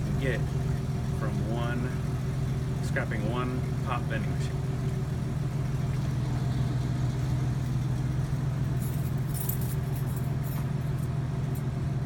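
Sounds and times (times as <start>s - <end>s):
engine hum: 0.0s - 12.0s
light metallic jingle: 8.7s - 11.6s.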